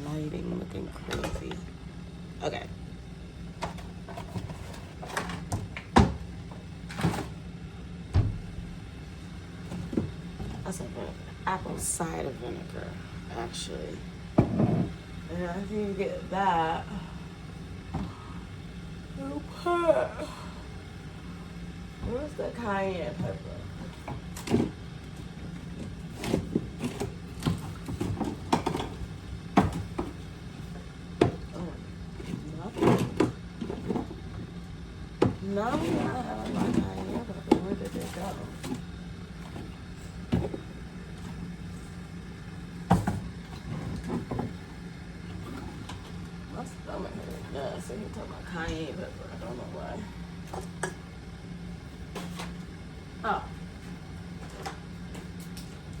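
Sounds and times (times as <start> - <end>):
steady low hum: 0.0 - 56.0
knocks and clunks in kitchen: 3.5 - 7.4, 8.0 - 10.9, 14.3 - 15.0, 22.0 - 34.6, 35.2 - 46.4
dull thud: 8.1 - 8.8.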